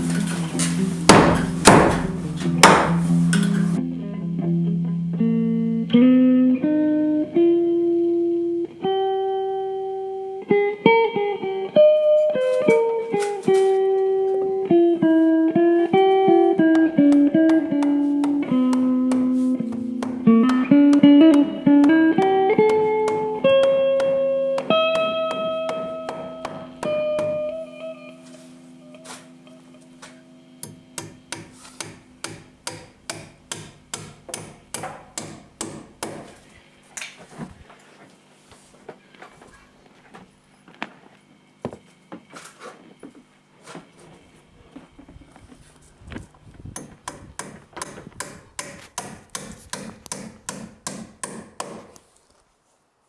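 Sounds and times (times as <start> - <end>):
sharp taps: 1.1 - 3.7, 16.3 - 27.6, 30.6 - 36.4, 46.8 - 52.0
plucked guitar melody: 3.4 - 30.5.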